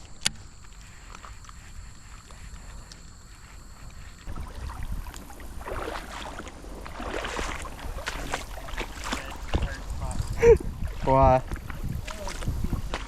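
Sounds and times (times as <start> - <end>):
water splashing around wading boots: 4.3 - 13.0
wind rumble on microphone: 4.3 - 13.0.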